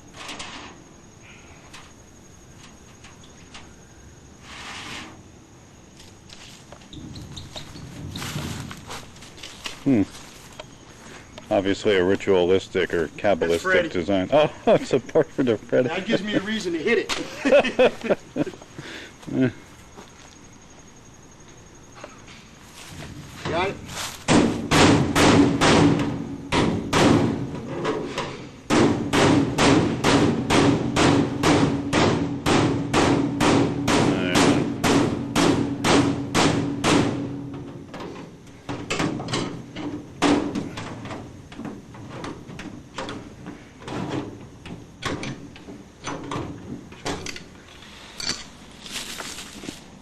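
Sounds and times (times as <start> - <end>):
hammer striking sheet metal: 28.7 - 37.2.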